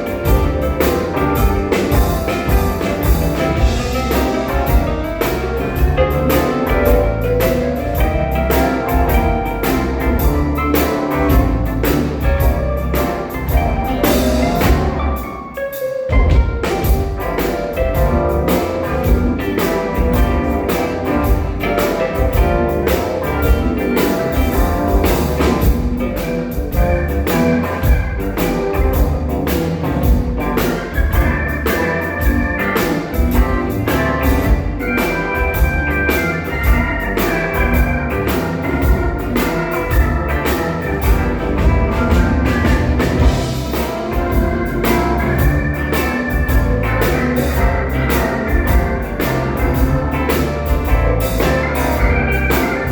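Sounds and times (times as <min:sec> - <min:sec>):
band playing music: 0:00.0 - 0:52.9
drum kit beat: 0:00.0 - 0:52.9.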